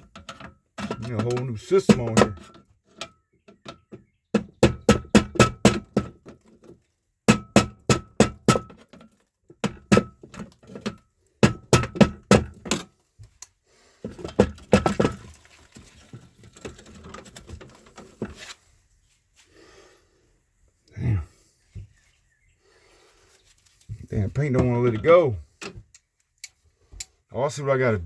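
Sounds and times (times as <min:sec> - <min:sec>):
hammer striking metal box: 0:00.0 - 0:02.6, 0:04.4 - 0:06.3, 0:07.3 - 0:08.8, 0:09.6 - 0:12.9
scraping and rattling: 0:13.9 - 0:18.9.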